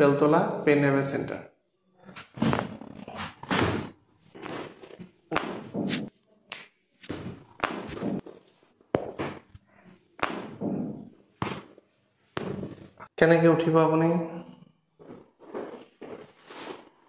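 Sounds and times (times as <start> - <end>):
dull thumps of chiropractic manipulation: 2.2 - 6.1, 7.1 - 8.3, 10.2 - 13.0.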